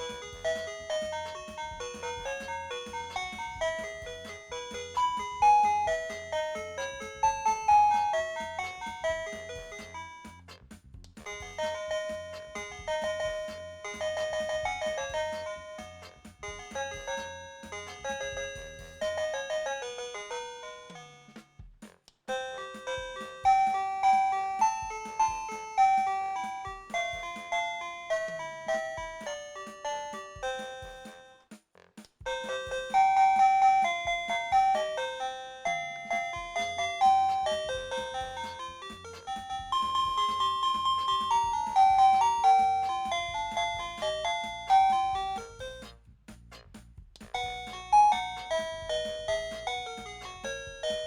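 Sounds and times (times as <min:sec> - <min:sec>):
electronic doorbell chime tunes: 0:00.0 - 0:10.3, 0:22.6 - 0:31.2, 0:32.3 - 0:45.9, 0:47.4 - 0:51.0.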